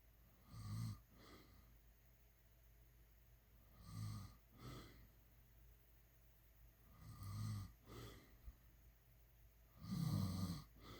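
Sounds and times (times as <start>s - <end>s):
person snoring: 3.7s - 5.0s, 6.9s - 8.2s, 9.8s - 10.9s.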